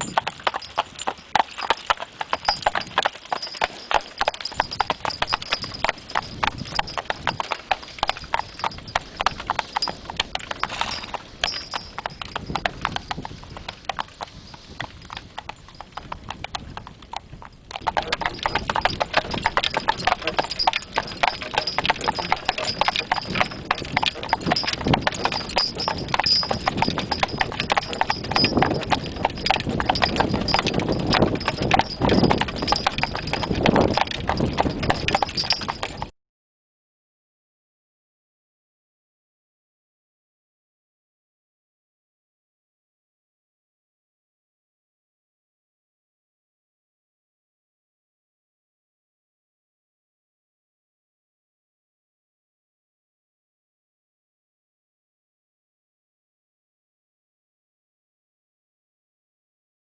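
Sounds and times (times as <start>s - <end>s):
horse hooves clip-clopping: 0.0s - 36.1s.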